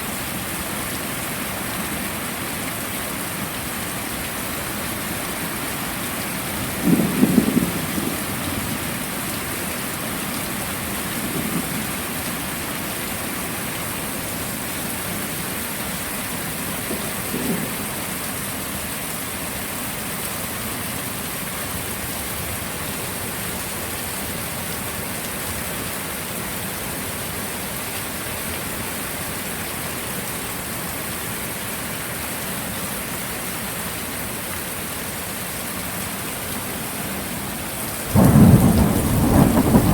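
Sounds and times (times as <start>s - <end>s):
heavy rain: 0.0s - 39.9s
thunder rumbles: 6.5s - 9.1s, 10.8s - 12.0s, 16.9s - 18.2s, 38.1s - 39.9s.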